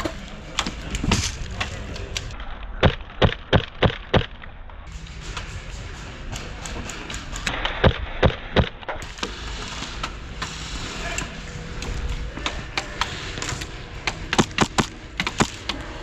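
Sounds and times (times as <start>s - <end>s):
airsoft gun shots: 14.4s - 15.6s.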